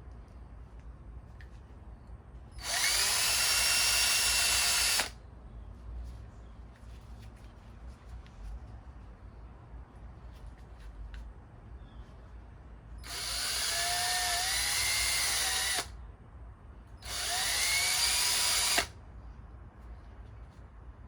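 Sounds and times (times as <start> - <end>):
power tool wire wheel whining: 2.6 - 5.1, 13.0 - 15.9, 17.0 - 18.9.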